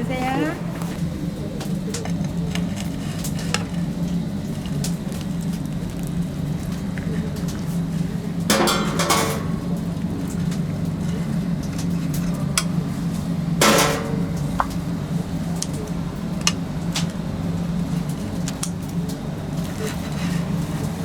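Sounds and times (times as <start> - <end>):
steady low hum: 0.0 - 21.0
utensils and dishes clinking: 8.5 - 12.8, 13.6 - 14.8.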